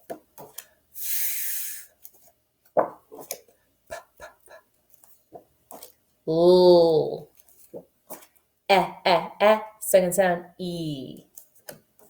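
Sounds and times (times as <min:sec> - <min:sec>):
soft voice puffs: 0:03.9 - 0:04.7.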